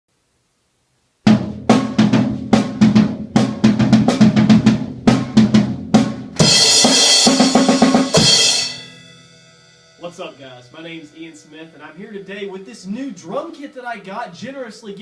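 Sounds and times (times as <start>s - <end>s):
tom and snare drum fill: 1.2s - 11.2s
cymbals crashing: 6.4s - 13.8s.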